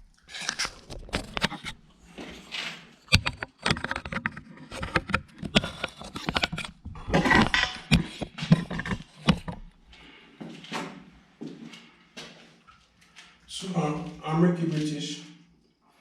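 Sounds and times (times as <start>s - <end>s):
objects being handled: 0.0s - 9.8s.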